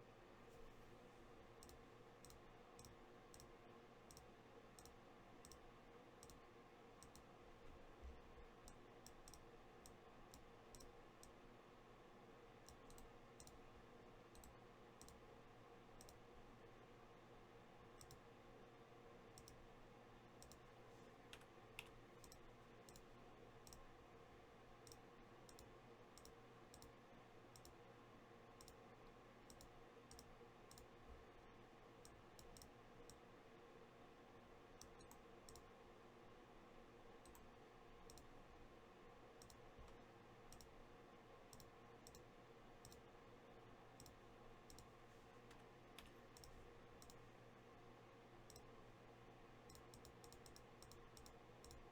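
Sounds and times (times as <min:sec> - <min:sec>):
faint steady hum: 0:00.0 - 0:51.9
soft irregular clicks: 0:01.5 - 0:07.4, 0:08.0 - 0:11.4, 0:12.6 - 0:15.3, 0:16.0 - 0:16.3, 0:17.9 - 0:18.4, 0:19.3 - 0:19.7, 0:20.4 - 0:24.0, 0:24.8 - 0:27.9, 0:28.5 - 0:33.3, 0:34.7 - 0:35.8, 0:37.2 - 0:38.6, 0:39.4 - 0:43.1, 0:43.9 - 0:47.3, 0:48.4 - 0:48.9, 0:49.6 - 0:51.9.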